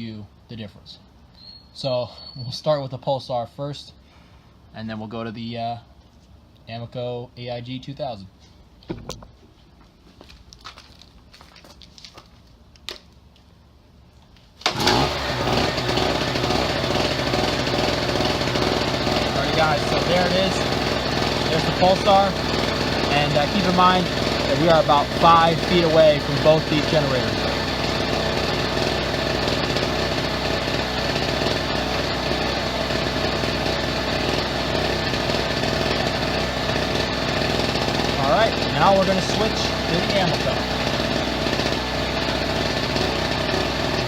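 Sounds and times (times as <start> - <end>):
generator engine droning: 14.6 - 44.0.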